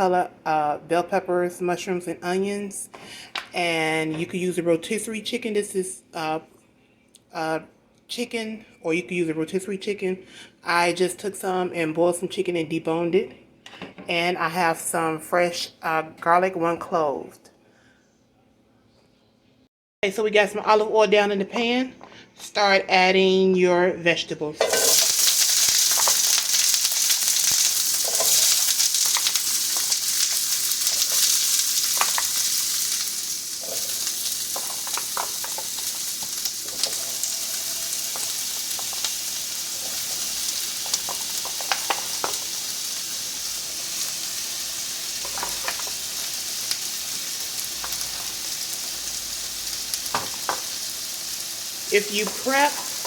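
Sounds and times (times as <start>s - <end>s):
utensil stirring vegetables: 24.6s - 53.0s
vegetables sizzling in frying pan: 24.6s - 53.0s.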